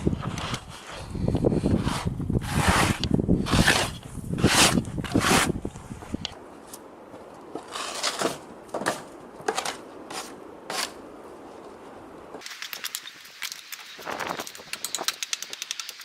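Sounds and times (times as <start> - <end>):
short scraping strokes: 0.4 - 5.6.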